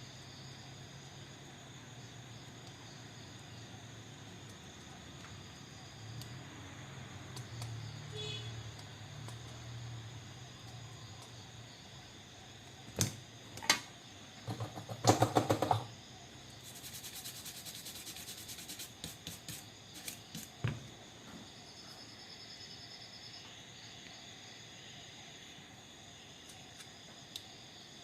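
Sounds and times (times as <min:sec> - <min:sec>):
knock: 0:14.5 - 0:15.9.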